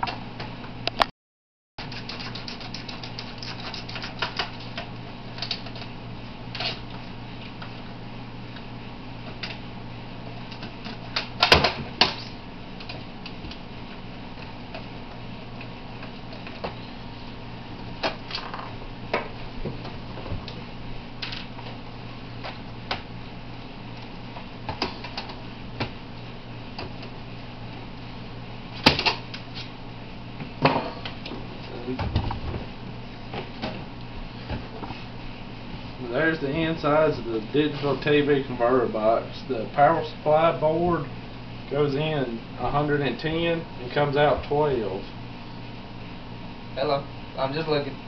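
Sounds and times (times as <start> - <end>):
steady low hum: 1.8 - 48.0.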